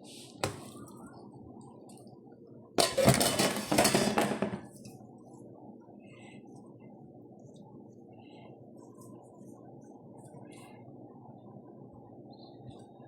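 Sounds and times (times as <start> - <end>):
utensils clattering in a pan: 2.8 - 4.7.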